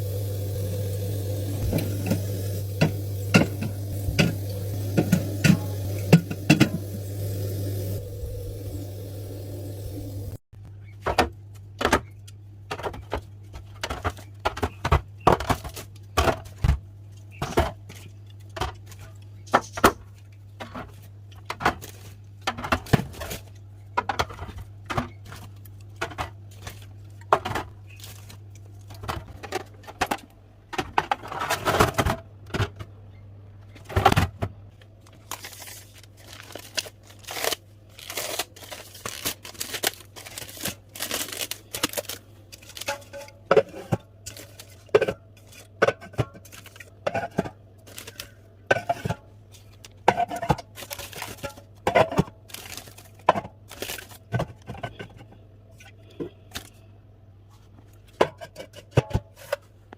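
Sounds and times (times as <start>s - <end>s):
bottles and cans clinking: 1.6s - 8.0s.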